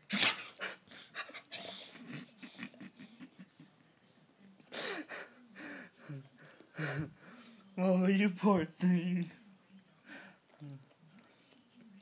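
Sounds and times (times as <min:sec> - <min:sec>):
dog sneezing: 0:00.1 - 0:00.8.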